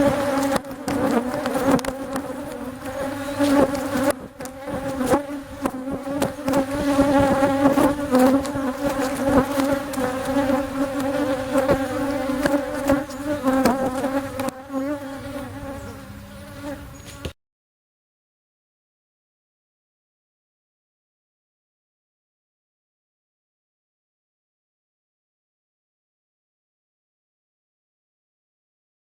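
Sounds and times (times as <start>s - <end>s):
honeybees buzzing: 0.0s - 17.4s.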